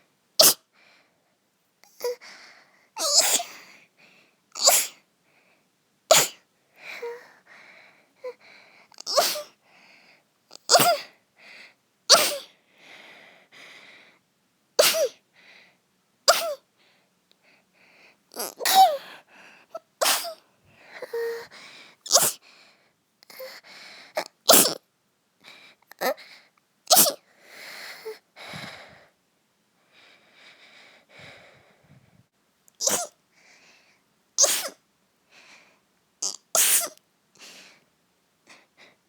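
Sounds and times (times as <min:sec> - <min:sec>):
girl sneezing: 0:00.4 - 0:00.6, 0:03.0 - 0:03.6, 0:04.6 - 0:05.0, 0:06.1 - 0:06.4, 0:09.0 - 0:09.6, 0:10.6 - 0:11.1, 0:12.1 - 0:12.5, 0:14.8 - 0:15.2, 0:16.3 - 0:16.6, 0:18.4 - 0:19.0, 0:20.0 - 0:20.4, 0:22.1 - 0:22.4, 0:24.2 - 0:24.8, 0:26.9 - 0:27.2, 0:32.8 - 0:33.2, 0:34.4 - 0:34.8, 0:36.2 - 0:37.0.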